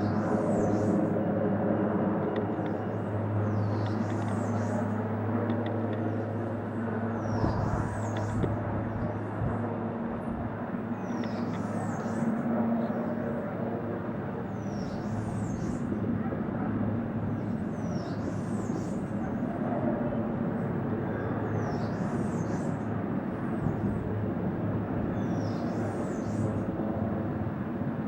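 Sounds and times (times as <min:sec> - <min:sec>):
engine drone: 0:00.0 - 0:12.9.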